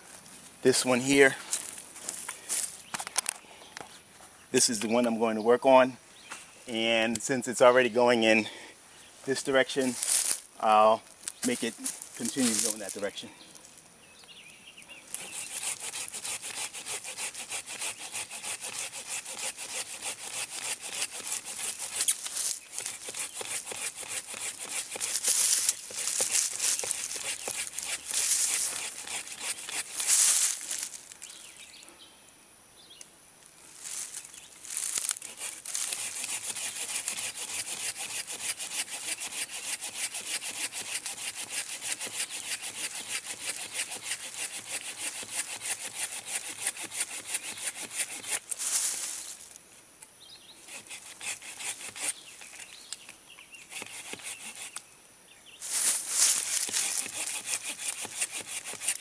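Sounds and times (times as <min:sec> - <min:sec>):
hand saw rasping through wood: 0:15.1 - 0:30.6, 0:35.1 - 0:48.4, 0:50.7 - 0:52.2, 0:53.7 - 0:54.8, 0:56.2 - 0:59.0.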